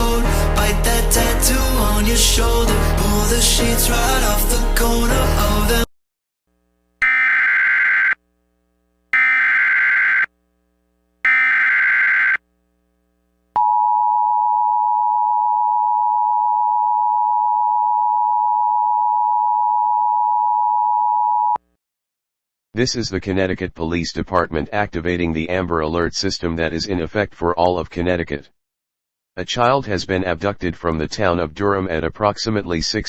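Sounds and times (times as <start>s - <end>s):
warbling data tones: 7.0s - 8.2s, 9.2s - 10.3s, 11.3s - 12.4s
steady attention tone: 9.1s - 10.3s.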